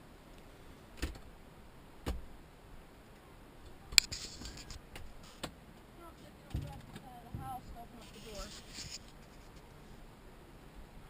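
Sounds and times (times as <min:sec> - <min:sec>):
rustling: 0:03.9 - 0:05.5, 0:06.2 - 0:10.0.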